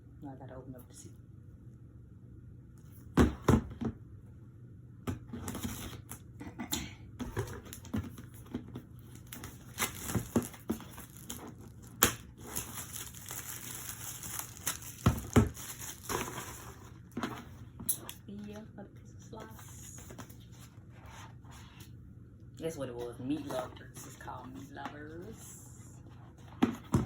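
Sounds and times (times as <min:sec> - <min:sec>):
packaging crinkling and tearing: 0:09.0 - 0:17.0.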